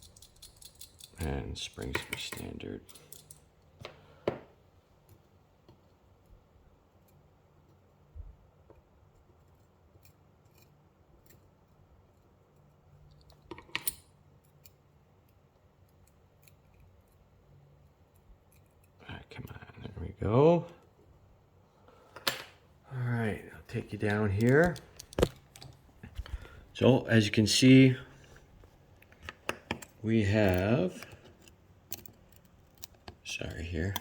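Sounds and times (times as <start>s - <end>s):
metal lock parts clicking: 0.0s - 3.5s, 13.0s - 14.8s, 24.0s - 26.4s, 28.2s - 34.0s.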